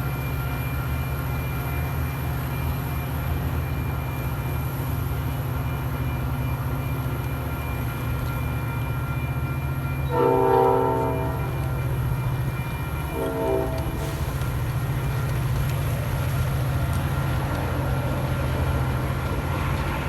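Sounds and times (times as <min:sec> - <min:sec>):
diesel locomotive droning: 0:00.0 - 0:20.0
locomotive horn: 0:10.0 - 0:12.1, 0:12.9 - 0:14.5.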